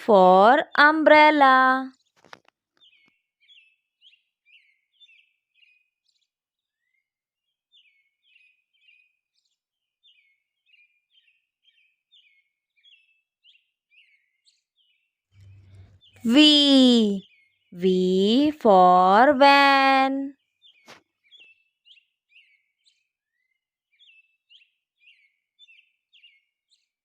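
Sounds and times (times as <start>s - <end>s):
faint bird chirping: 10.0s - 26.9s.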